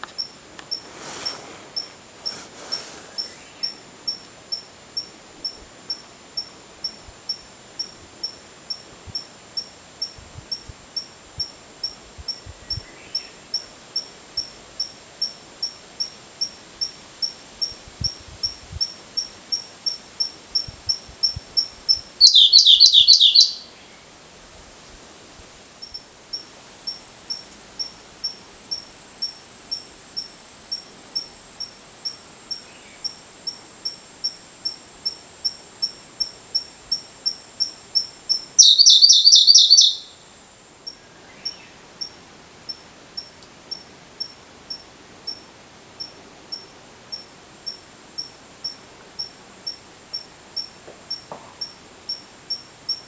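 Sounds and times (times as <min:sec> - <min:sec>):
bird fast trill: 0:22.2 - 0:23.7, 0:36.6 - 0:40.2
bird singing high notes: 0:38.6 - 0:40.1.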